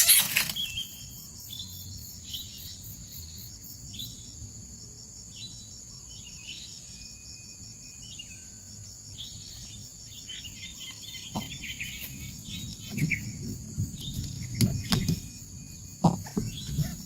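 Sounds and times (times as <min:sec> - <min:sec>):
short bird chirps: 0:00.0 - 0:01.0
insects trilling: 0:00.0 - 0:17.0.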